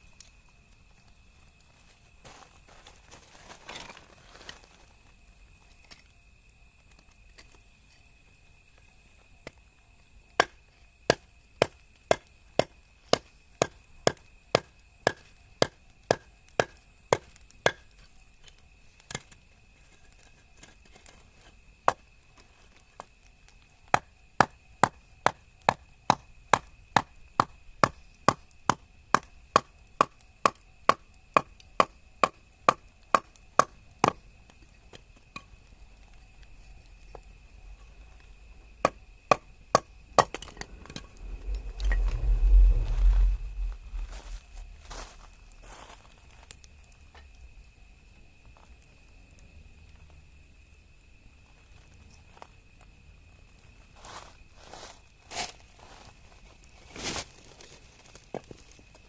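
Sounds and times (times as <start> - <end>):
wood being chopped: 10.4 - 17.8, 23.9 - 34.2.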